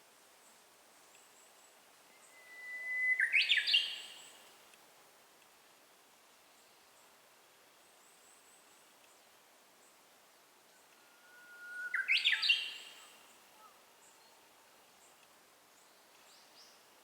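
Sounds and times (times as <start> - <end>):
bird singing whistled song: 2.1 - 4.4, 11.0 - 13.2.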